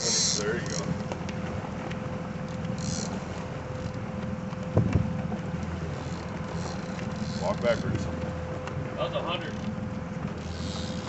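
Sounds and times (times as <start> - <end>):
boat motor humming: 0.0 - 11.0.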